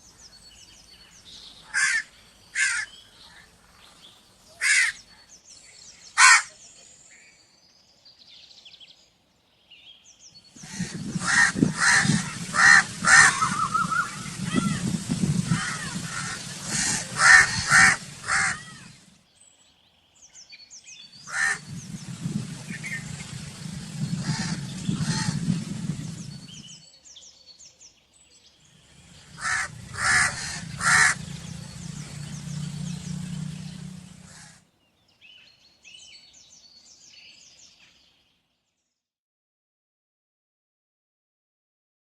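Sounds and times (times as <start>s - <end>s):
crows cawing: 1.7s - 3.5s, 4.6s - 5.0s, 6.2s - 6.5s, 10.6s - 19.0s, 21.3s - 21.6s, 24.2s - 25.4s, 29.2s - 31.4s
steady low hum: 10.6s - 19.2s, 21.3s - 26.8s, 28.6s - 34.6s.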